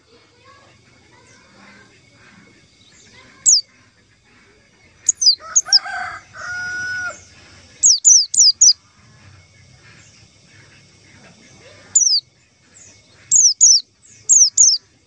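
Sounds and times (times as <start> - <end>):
high bird chirps sweeping downward: 3.1 - 3.6, 5.0 - 7.2, 7.8 - 8.8, 11.9 - 12.2, 13.3 - 14.8
low drawn-out bird call: 4.9 - 14.8.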